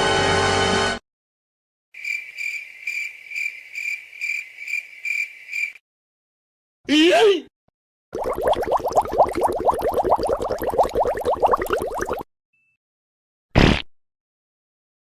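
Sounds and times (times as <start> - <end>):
music: 0.0 - 1.0
cricket-like insect chirping: 2.0 - 5.8.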